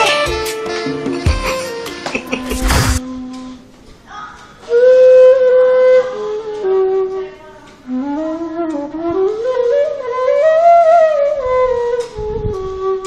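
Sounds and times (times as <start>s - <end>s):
flute-like woodwind melody: 0.0s - 3.0s, 4.7s - 7.3s, 7.9s - 13.0s
low rumbling: 2.4s - 3.2s.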